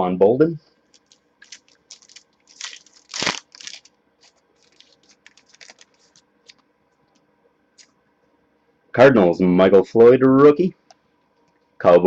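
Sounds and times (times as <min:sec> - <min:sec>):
wrapper crinkling and tearing: 0:00.9 - 0:06.6.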